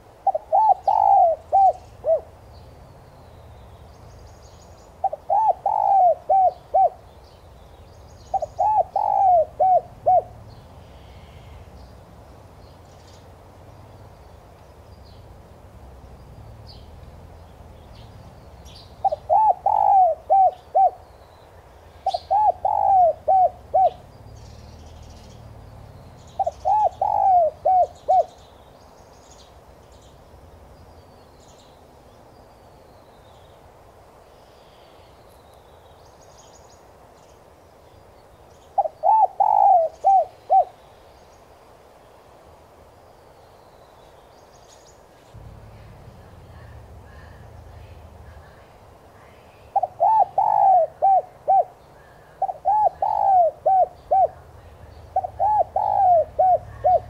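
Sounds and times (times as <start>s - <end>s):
small birds chirping: 0.0s - 57.0s
dove cooing: 0.2s - 2.4s, 5.0s - 7.1s, 8.3s - 11.7s, 19.0s - 21.1s, 22.0s - 24.2s, 26.3s - 28.4s, 38.8s - 40.8s, 49.7s - 57.0s.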